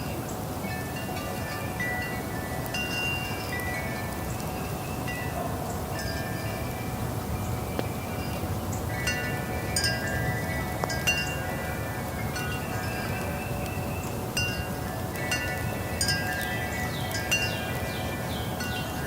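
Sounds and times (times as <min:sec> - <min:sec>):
low rush of wind: 0:00.0 - 0:19.0
wind chimes ringing: 0:00.0 - 0:19.0.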